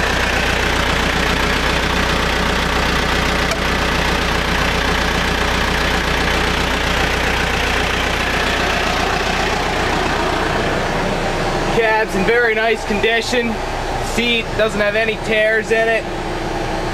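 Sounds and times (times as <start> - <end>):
diesel engine idling: 0.0 - 16.9.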